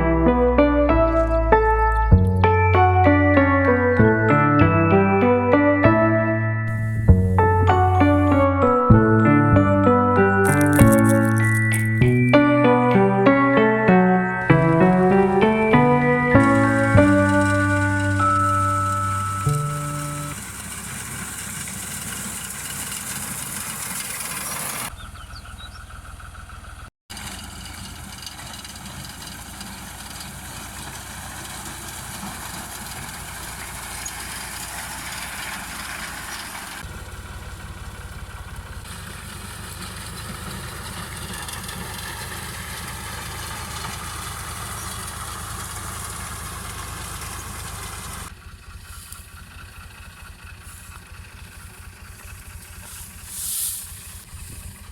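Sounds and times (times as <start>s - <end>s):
tractor engine droning: 0.0s - 54.9s
machinery rattle: 14.5s - 54.9s.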